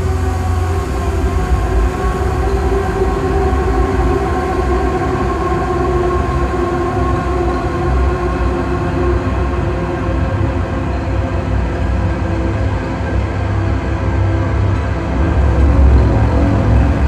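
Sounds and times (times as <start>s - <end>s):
droning noise music: 0.0s - 17.0s.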